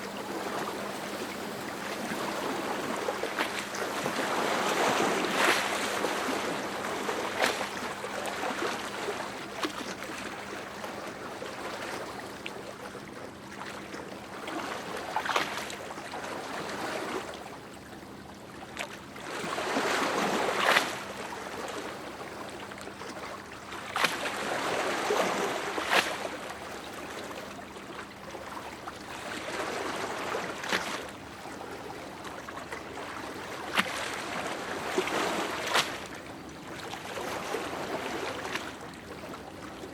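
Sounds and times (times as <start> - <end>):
waves lapping at shore: 0.0 - 39.9
water slapping: 33.1 - 36.2.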